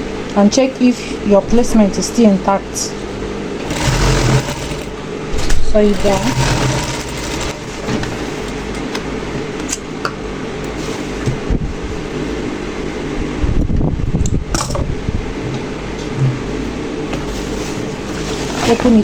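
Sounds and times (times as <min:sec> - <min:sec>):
sewing machine stitching: 0:03.6 - 0:08.6.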